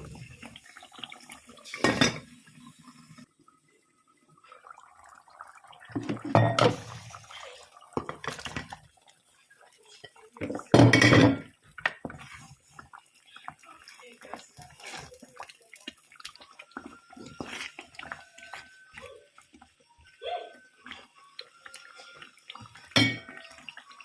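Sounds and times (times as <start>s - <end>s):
pot and metal utensils clattering: 1.6s - 2.3s, 5.9s - 8.8s, 9.9s - 12.5s, 21.9s - 23.7s.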